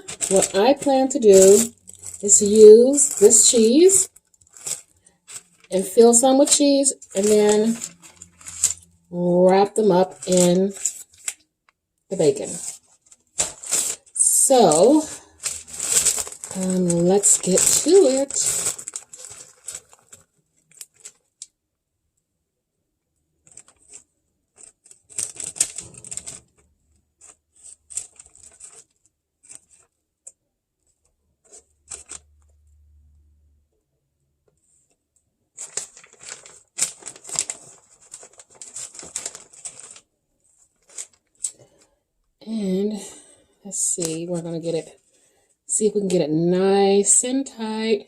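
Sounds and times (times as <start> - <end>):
food rustling and tearing: 0.0 - 9.0, 10.0 - 11.4, 12.5 - 21.4, 23.4 - 30.0, 31.4 - 32.4, 35.6 - 41.9.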